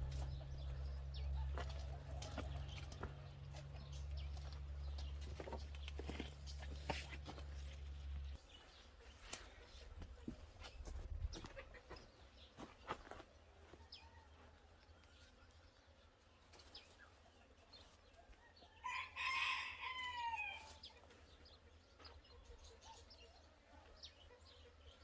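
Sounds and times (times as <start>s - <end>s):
rooster crowing: 18.6s - 20.8s.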